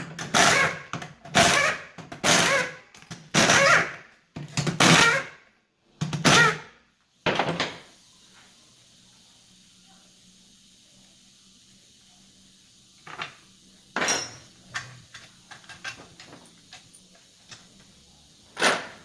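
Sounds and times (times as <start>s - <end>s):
faint hiss: 6.8s - 19.0s.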